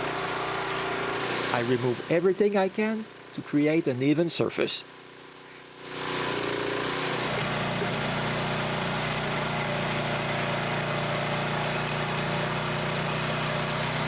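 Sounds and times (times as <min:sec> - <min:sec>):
excavator engine running: 0:06.0 - 0:14.0.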